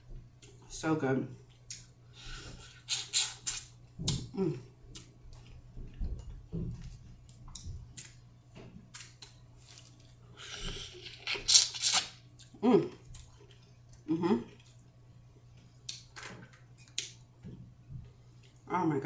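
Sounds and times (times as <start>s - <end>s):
wet chewing with smacking: 2.6s - 4.3s, 4.9s - 16.1s.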